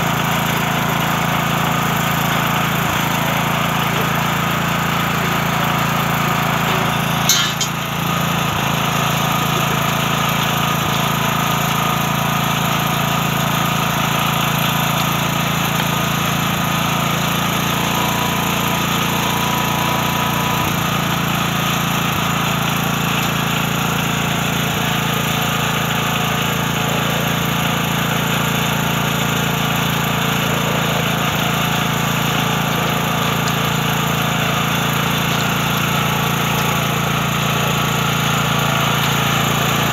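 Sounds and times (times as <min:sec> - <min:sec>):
small engine running steadily: 0:00.0 - 0:39.9
short metallic clank: 0:06.7 - 0:07.9.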